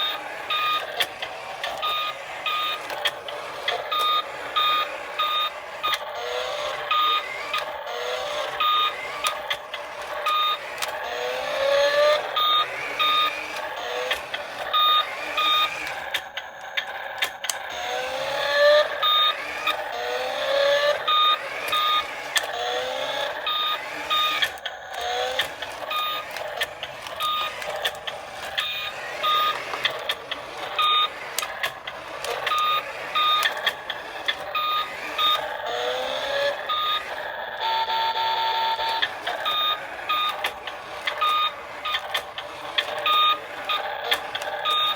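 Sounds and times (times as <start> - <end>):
synthesized engine revving whines: 0.0 - 16.2, 17.7 - 44.9.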